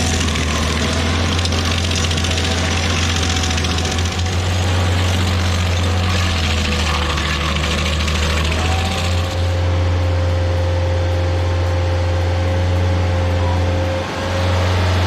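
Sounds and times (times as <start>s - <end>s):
stump grinder engine running: 0.0s - 15.0s.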